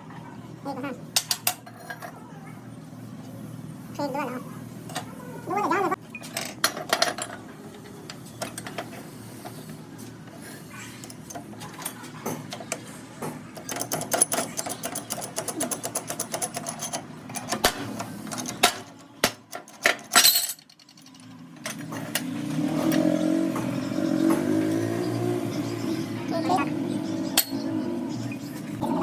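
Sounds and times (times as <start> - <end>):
metal tools clinking and knocking: 1.2 - 2.2, 6.1 - 9.6, 10.9 - 12.9, 13.6 - 23.1, 27.4 - 27.6.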